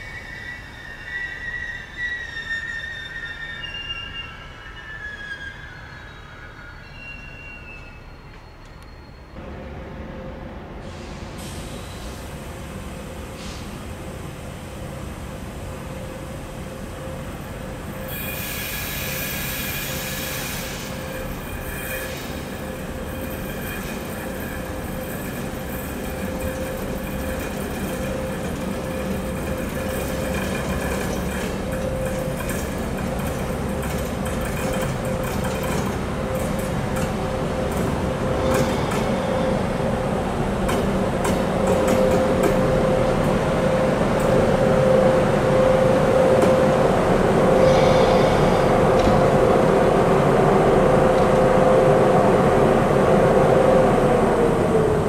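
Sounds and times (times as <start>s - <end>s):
high wheel squeal: 0.0s - 9.4s, 18.0s - 34.0s, 47.5s - 48.9s
train wheels whining on rails: 0.0s - 55.0s.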